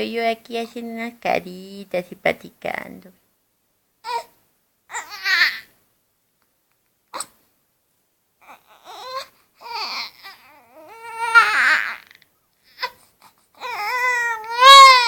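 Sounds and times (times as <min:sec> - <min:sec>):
baby crying: 0:04.0 - 0:05.7, 0:07.1 - 0:07.4, 0:08.4 - 0:15.0.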